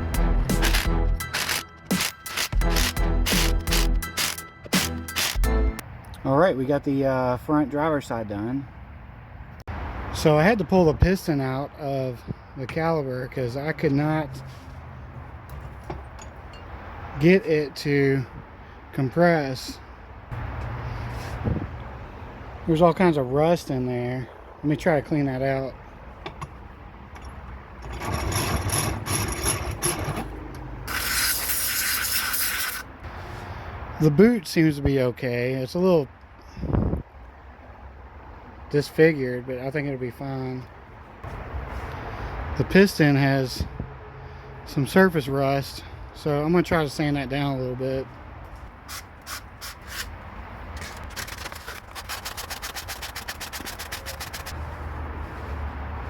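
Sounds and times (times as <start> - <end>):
scrubbing rust from metal bore: 0.2 - 5.4, 26.2 - 33.0, 48.8 - 54.8
sanding metal by hand: 0.5 - 5.4, 30.9 - 32.9, 48.9 - 50.1, 50.8 - 54.6.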